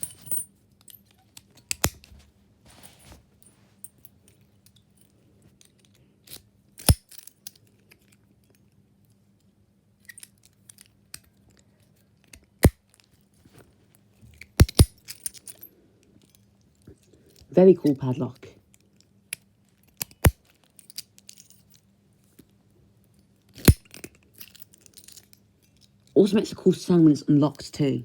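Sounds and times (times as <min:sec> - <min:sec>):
padlock metallic clicks: 0:01.4 - 0:02.1, 0:06.3 - 0:07.5, 0:14.4 - 0:15.4, 0:19.3 - 0:21.1, 0:23.6 - 0:24.1.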